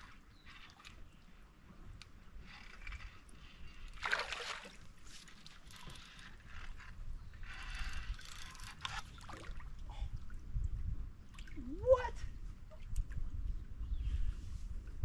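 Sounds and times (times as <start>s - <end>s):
fishing reel whirring and clicking: 5.6s - 9.1s.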